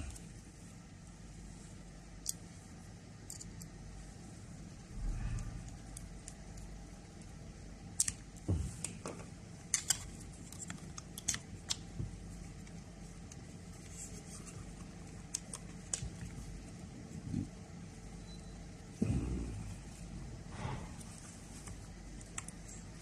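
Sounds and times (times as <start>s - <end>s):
low steady hum: 0.0s - 23.0s
metallic clicks of tools handled: 3.2s - 3.7s.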